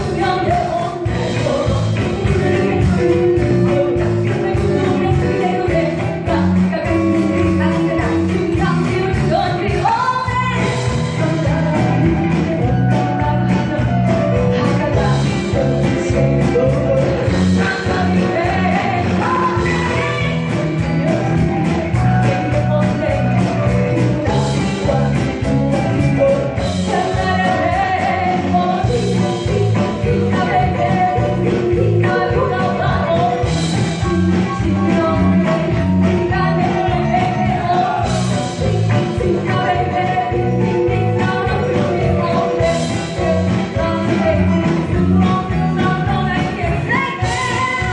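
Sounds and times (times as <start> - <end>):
lead singer singing: 0.0 - 47.9
live rock band playing: 0.0 - 47.9.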